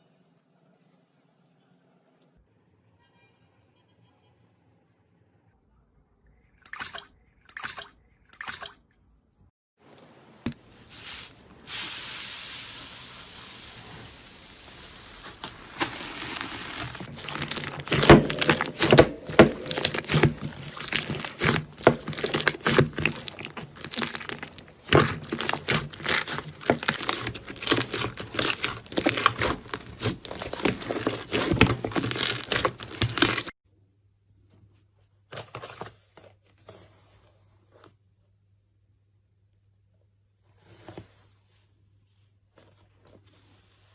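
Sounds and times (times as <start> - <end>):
slime crackling and popping: 13.1 - 33.5
soft sticky slime sounds: 14.4 - 33.5.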